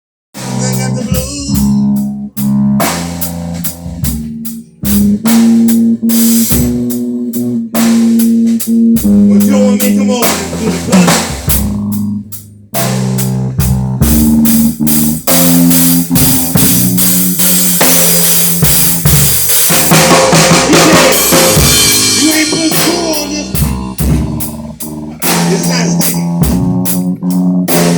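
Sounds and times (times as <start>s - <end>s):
music with drum kit and bass: 0.4s - 27.9s.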